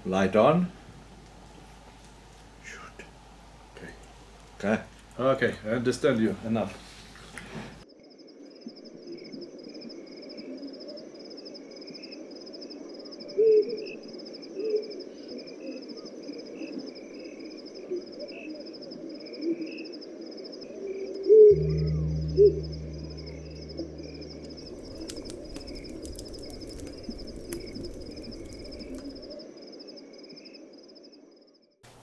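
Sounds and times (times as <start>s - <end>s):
scattered chirps: 21.5s - 29.2s
low hum: 21.5s - 29.3s
insect trill: 21.5s - 31.3s.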